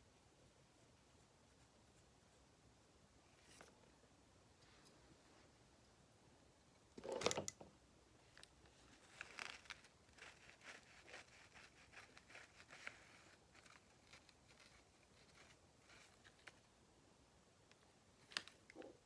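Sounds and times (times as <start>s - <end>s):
soft scratching and light ticks: 3.2s - 3.9s, 8.2s - 16.8s
rustling scrape: 8.7s - 16.7s.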